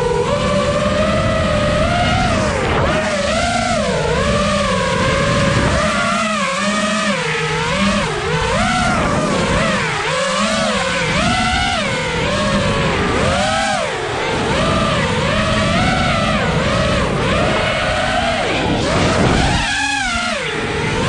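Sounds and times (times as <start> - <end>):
drone motors whining: 0.0 - 21.0.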